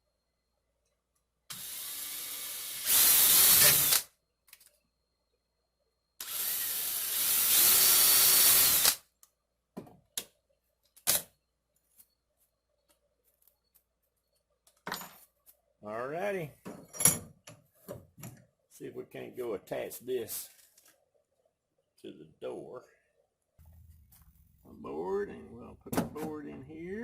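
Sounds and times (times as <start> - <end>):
power drill running: 1.5 - 4.1, 6.2 - 9.0.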